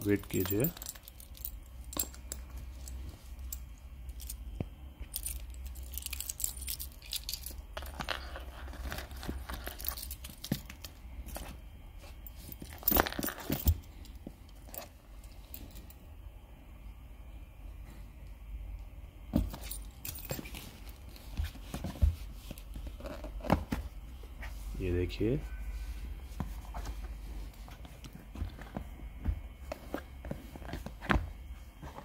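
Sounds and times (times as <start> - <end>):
keys jangling: 0.0 - 4.4, 5.0 - 10.9, 12.5 - 15.9, 19.5 - 21.0.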